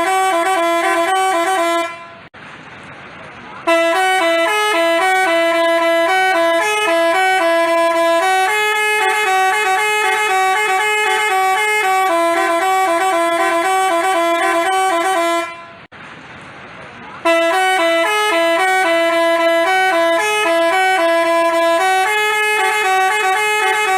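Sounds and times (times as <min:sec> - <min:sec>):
bus horn playing a melody: 0:00.0 - 0:02.3, 0:03.6 - 0:15.9, 0:17.2 - 0:23.9.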